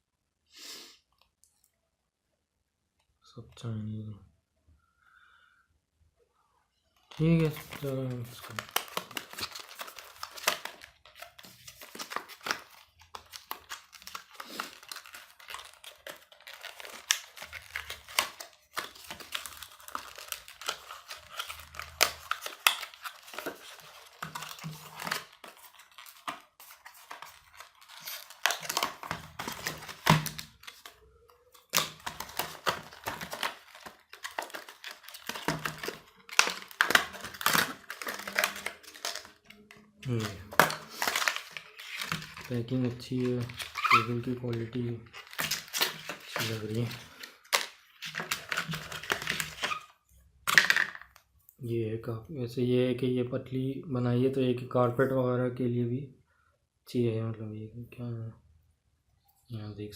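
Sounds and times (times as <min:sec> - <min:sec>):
packaging crinkling and tearing: 0:07.1 - 0:51.0.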